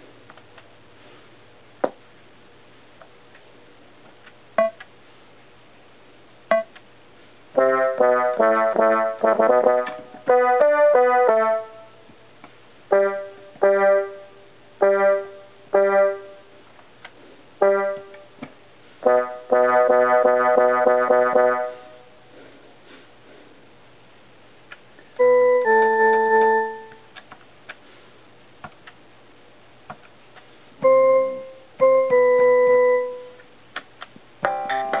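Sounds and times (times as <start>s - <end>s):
keyboard notes: 7.6s - 12.1s, 12.9s - 16.6s, 17.6s - 22.3s, 25.2s - 27.2s, 30.8s - 33.5s.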